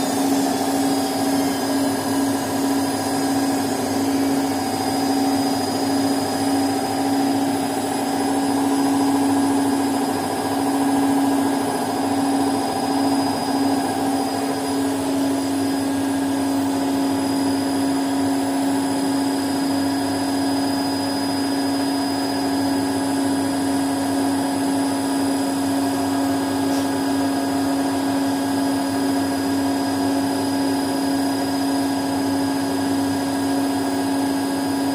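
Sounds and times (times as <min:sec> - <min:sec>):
washing machine motor hum: 0:00.0 - 0:34.9.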